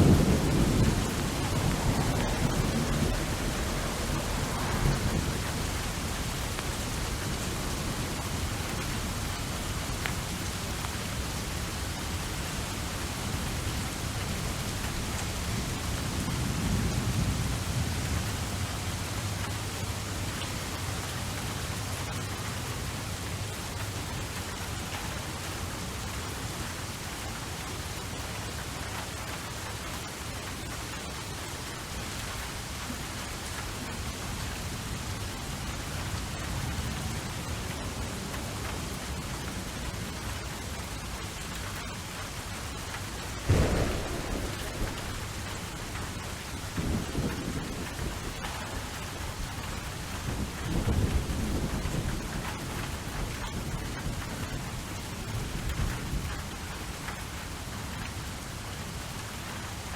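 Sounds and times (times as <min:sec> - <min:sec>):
low rolling thunder: 0:00.0 - 0:19.5, 0:43.3 - 0:56.4
steady rain falling: 0:00.0 - 0:59.9.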